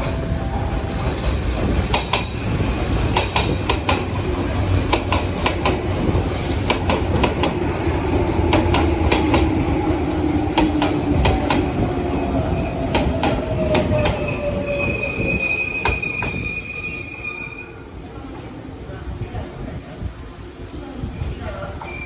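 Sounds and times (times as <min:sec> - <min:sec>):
train running rumble: 0:00.0 - 0:16.5.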